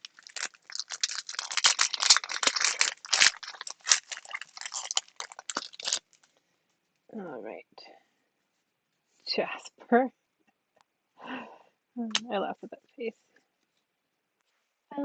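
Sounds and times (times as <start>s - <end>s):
trading cards shuffling: 0.0s - 6.2s.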